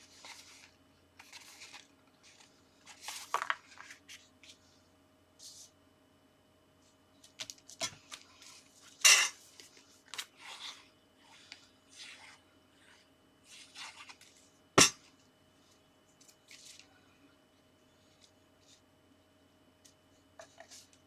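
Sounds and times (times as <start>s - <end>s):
card rustling and sliding: 0.0s - 4.6s.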